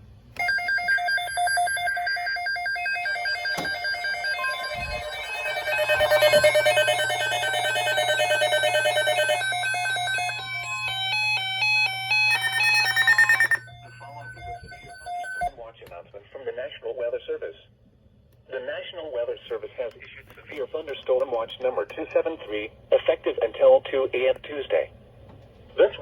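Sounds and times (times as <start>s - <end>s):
electronic alert beeps: 1.4s - 15.5s
steady alert tone: 1.6s - 15.5s.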